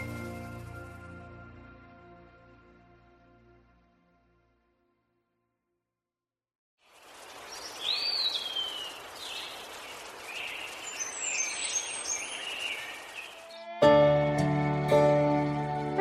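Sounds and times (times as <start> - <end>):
outdoor ambience hiss: 6.8 - 13.7
birds calling: 7.0 - 13.8.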